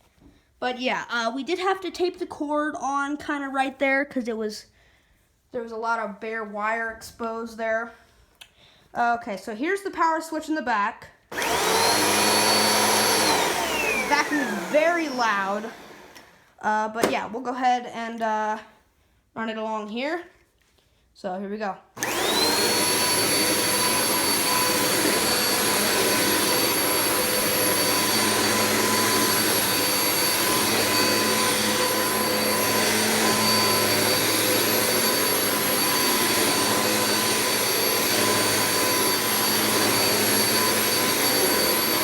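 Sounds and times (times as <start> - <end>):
vacuum cleaner running: 11.3 - 17.1, 22.0 - 42.0.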